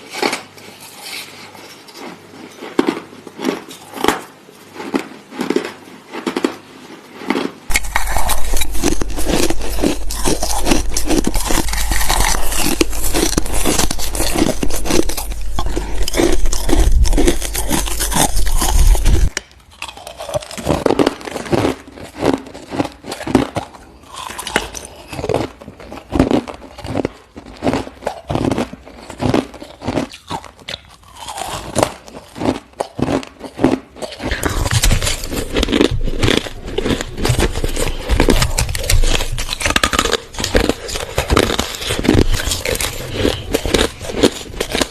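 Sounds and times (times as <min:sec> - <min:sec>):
crushed ice crunching: 0:07.3 - 0:22.8, 0:34.2 - 0:44.9.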